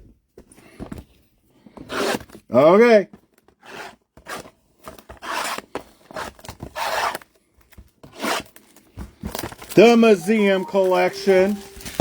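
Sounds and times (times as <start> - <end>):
cardboard packaging scraping: 3.6 - 7.3.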